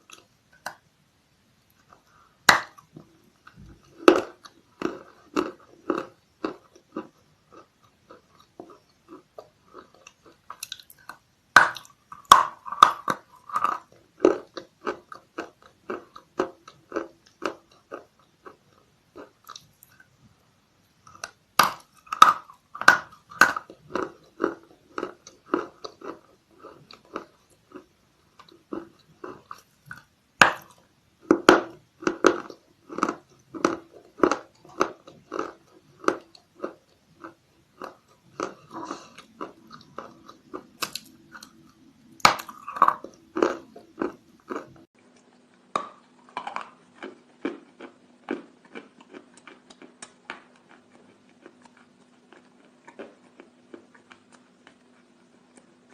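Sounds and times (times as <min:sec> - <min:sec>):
chalk crunching being chewed: 0:46.2 - 0:55.9.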